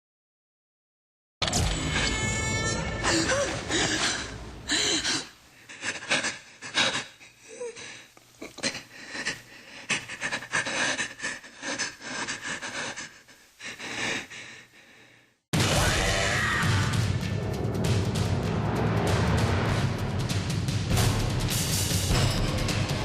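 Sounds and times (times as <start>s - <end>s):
person whimpering: 2.7s - 9.4s
person panting hard: 3.1s - 15.4s.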